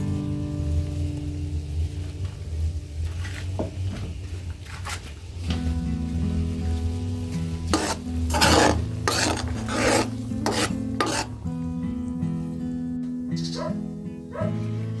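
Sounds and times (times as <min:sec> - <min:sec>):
spatula scraping a pan: 0:07.4 - 0:11.5.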